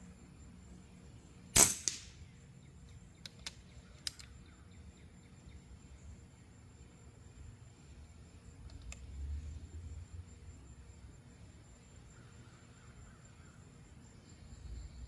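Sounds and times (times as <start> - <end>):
air rifle firing: 1.6 - 2.2
light clicks: 3.2 - 4.3.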